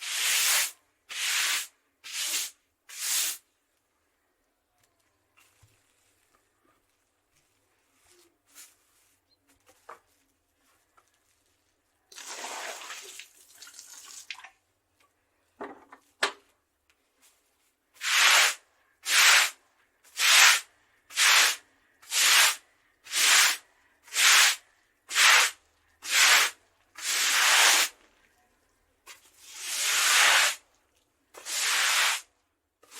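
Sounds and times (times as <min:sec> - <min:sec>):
scrubbing on concrete: 0:00.0 - 0:03.4, 0:18.0 - 0:28.1, 0:29.1 - 0:30.7, 0:31.4 - 0:32.9.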